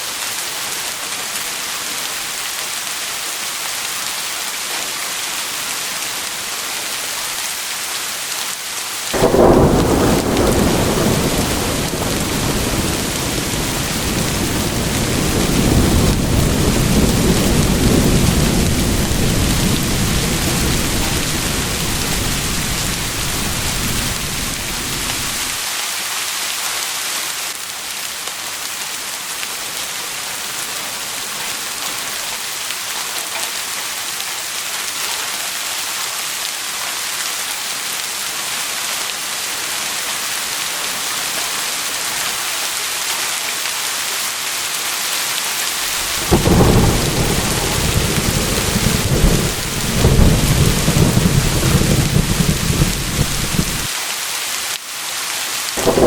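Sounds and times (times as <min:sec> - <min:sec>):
steady rain hissing: 0:00.0 - 0:56.0
thunder rolling: 0:09.2 - 0:25.6, 0:45.8 - 0:53.9, 0:55.8 - 0:56.0.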